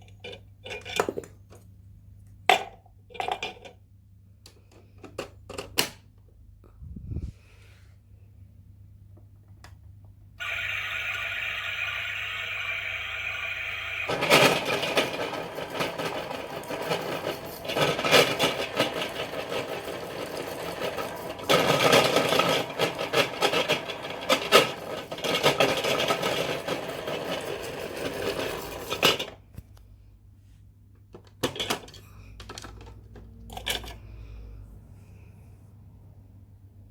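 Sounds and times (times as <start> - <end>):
toy dishwasher steady tone: 10.4 - 29.4.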